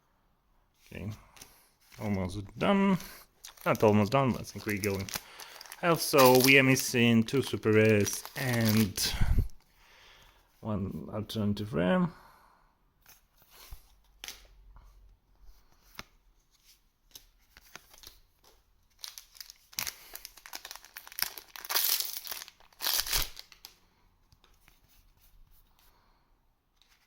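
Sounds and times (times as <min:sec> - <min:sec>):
wrapper tearing and crackling: 0:03.4 - 0:09.1, 0:18.9 - 0:23.8
wrapper rustling and clicks: 0:03.4 - 0:09.2, 0:17.1 - 0:23.8.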